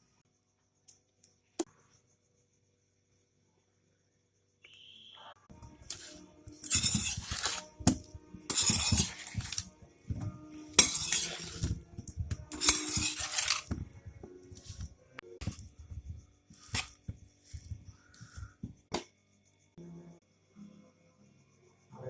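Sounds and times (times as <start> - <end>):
metal utensils scraping cookware: 5.8 - 15.7, 16.5 - 18.4.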